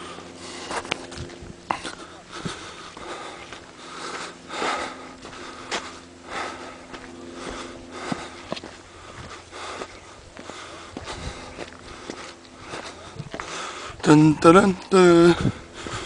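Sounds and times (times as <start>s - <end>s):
person breathing hard: 0.0s - 16.0s.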